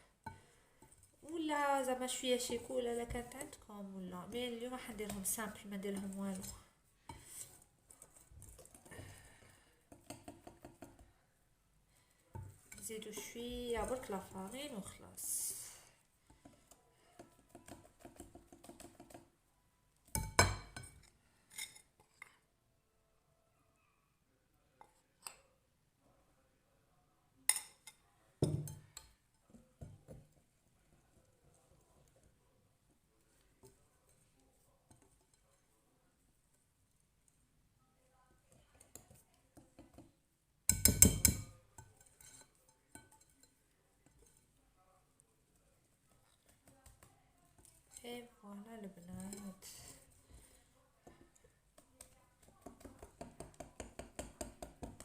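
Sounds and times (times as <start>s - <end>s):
batter being mixed: 0.0s - 22.3s, 28.4s - 37.7s, 38.3s - 55.0s
utensil clinking on mixing bowl: 12.3s - 15.6s, 20.1s - 22.3s, 40.7s - 44.6s, 48.8s - 55.0s
kitchenware clattering: 20.1s - 22.2s, 40.7s - 44.5s.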